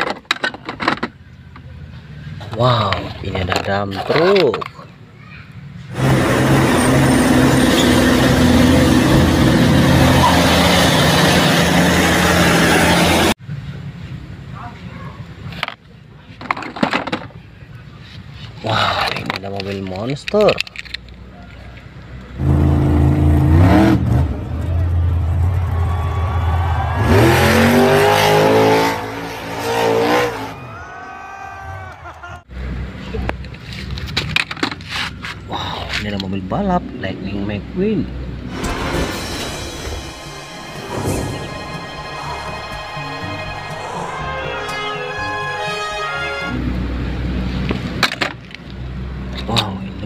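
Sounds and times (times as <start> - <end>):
car engine revving: 5.9 - 13.4, 22.4 - 30.6.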